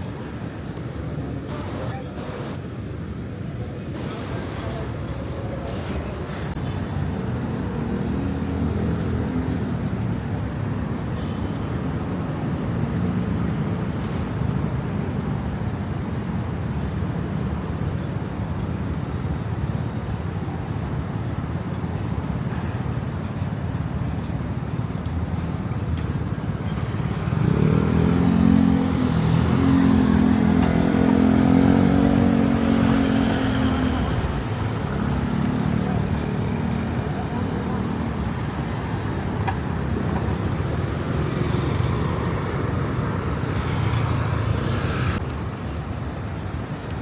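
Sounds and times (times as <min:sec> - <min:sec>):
street traffic rumbling: 0:00.0 - 0:47.0
vehicle engine passing close: 0:26.8 - 0:45.2.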